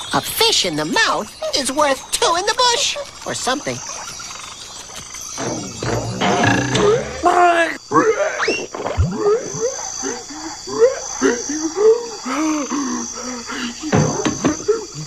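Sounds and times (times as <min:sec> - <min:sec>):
high steady chirping: 0:00.0 - 0:07.8
rising and falling animal calls: 0:02.7 - 0:15.0.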